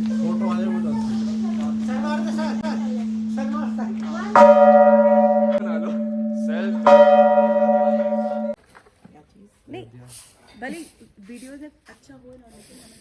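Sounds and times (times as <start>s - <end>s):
steady low hum: 0.0s - 8.6s
voices: 0.0s - 8.6s
bell ringing: 1.4s - 8.6s.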